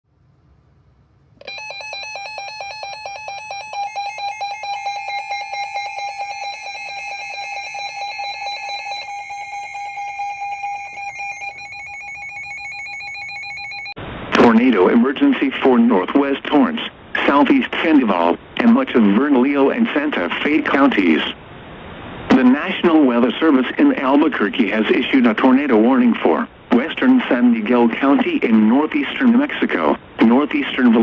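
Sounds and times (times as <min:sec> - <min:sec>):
pulsing electronic alert tone: 0:01.4 - 0:13.9.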